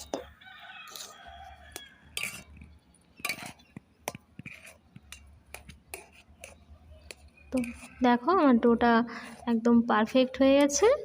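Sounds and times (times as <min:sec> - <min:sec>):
utensil clinking and scraping in pan: 0:00.0 - 0:08.0.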